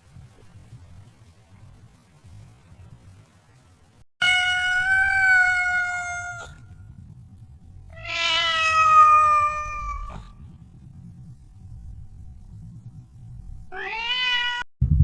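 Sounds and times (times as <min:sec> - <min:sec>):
cat meowing: 0:04.2 - 0:06.7, 0:07.9 - 0:10.4, 0:13.7 - 0:14.7.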